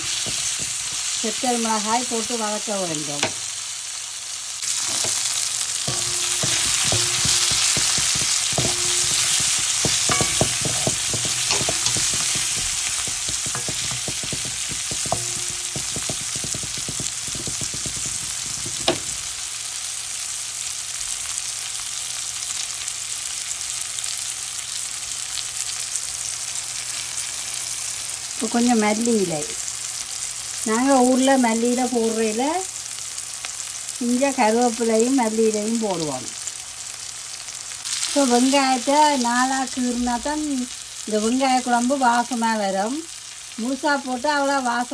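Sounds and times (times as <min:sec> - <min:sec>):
spoon scraping a pan: 0:00.0 - 0:01.2, 0:04.6 - 0:19.4
food sizzling in hot oil: 0:00.0 - 0:44.9.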